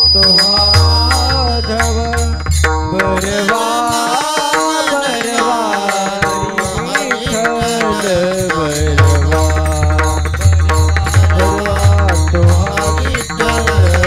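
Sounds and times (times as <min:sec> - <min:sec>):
hand percussion strokes: 0:00.0 - 0:14.0
person singing devotional melody: 0:00.0 - 0:14.0
steady drumming: 0:00.0 - 0:14.0.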